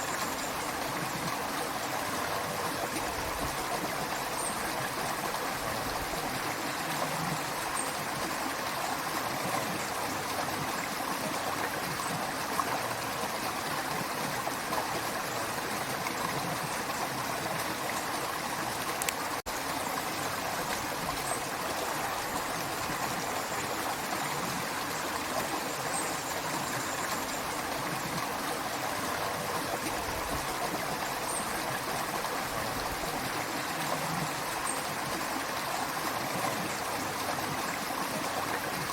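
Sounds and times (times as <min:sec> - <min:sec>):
creek water running: 0:00.0 - 0:38.9.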